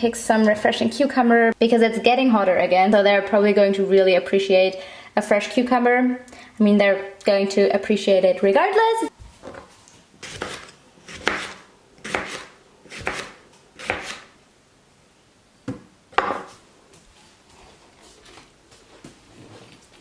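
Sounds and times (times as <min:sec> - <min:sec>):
knife chopping on cutting board: 0:10.2 - 0:14.3.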